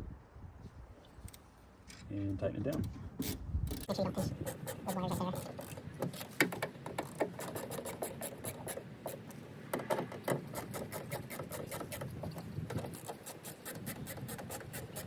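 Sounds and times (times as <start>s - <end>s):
rubbing and scraping: 3.2s - 15.0s.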